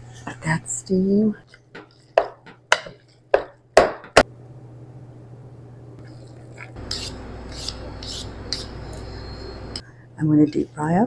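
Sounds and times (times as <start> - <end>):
steady low hum: 0.0 - 11.0
cookware knocking: 2.2 - 4.2.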